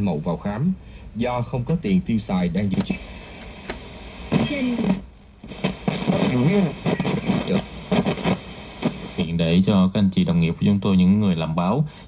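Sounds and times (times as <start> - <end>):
person speaking: 0.0 - 3.4, 4.3 - 5.0
broadcast background noise: 0.0 - 12.0.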